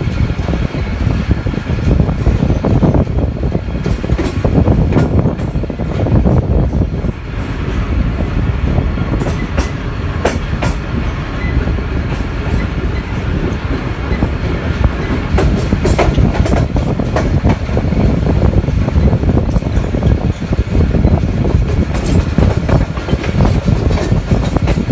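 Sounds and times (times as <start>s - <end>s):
train rumbling on board: 0.0s - 24.9s
wheels clicking over rail joints: 9.1s - 24.9s.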